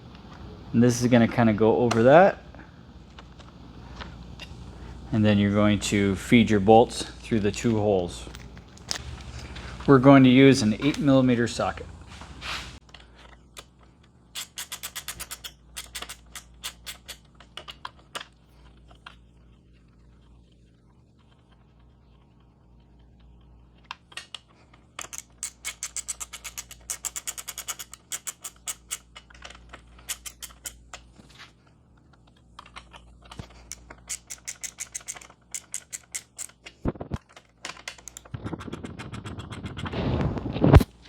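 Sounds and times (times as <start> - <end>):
scraping handling noise: 0.0 - 19.8, 23.2 - 41.0
ratchet wrench clicking: 14.4 - 17.2, 25.0 - 29.2, 33.6 - 36.6.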